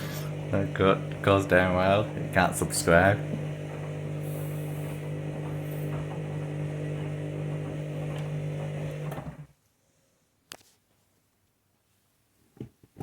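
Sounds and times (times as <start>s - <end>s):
washing machine motor hum: 0.0s - 9.6s.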